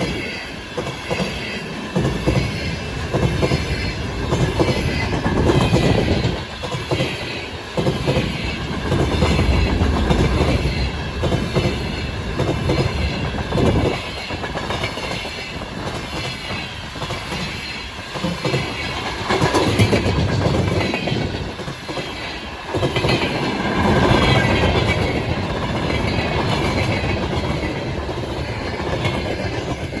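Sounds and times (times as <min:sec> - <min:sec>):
train wheels clattering over rail joints: 0:00.0 - 0:30.0.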